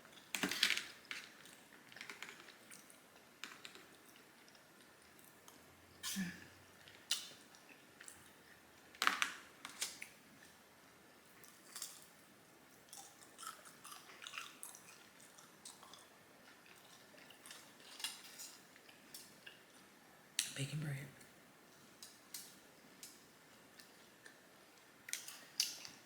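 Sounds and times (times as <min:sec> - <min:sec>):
person chewing and lip smacking: 0:12.7 - 0:19.8.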